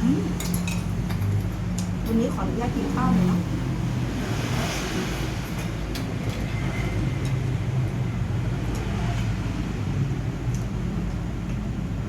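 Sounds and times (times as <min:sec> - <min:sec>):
utensils clicking on dish: 0:00.1 - 0:02.2.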